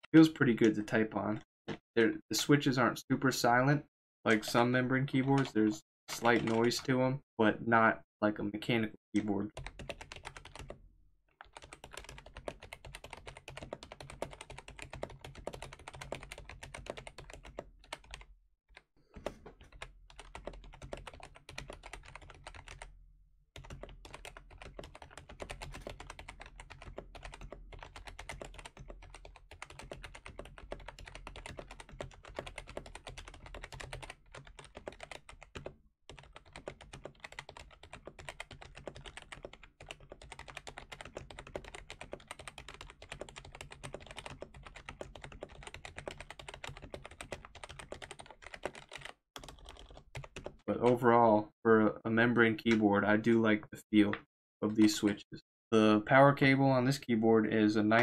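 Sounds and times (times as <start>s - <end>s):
fast keyboard typing: 5.3s - 6.9s, 9.5s - 10.8s, 11.4s - 22.9s, 23.6s - 51.0s.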